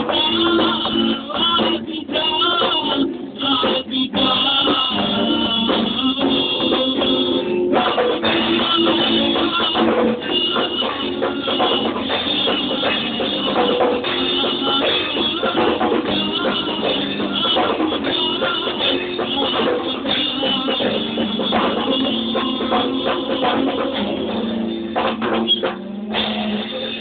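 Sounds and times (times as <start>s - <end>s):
rock band playing: 0.0s - 27.0s.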